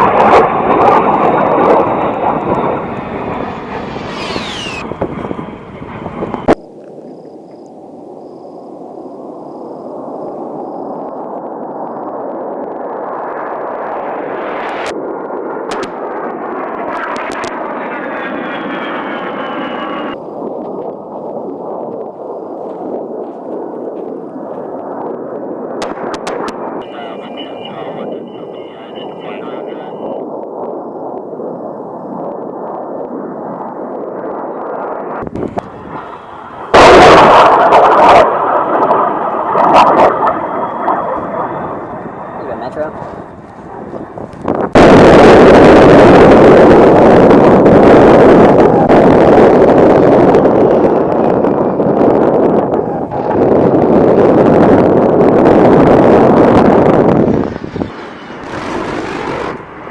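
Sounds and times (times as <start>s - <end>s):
rushing jet engine noise: 0.0s - 59.9s
sharp crackles: 15.6s - 17.8s, 25.8s - 27.9s, 57.9s - 59.8s.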